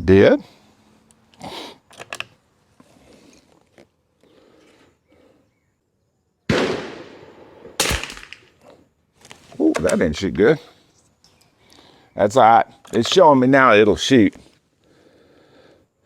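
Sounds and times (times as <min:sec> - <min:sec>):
rifle shots: 0:06.5 - 0:08.5.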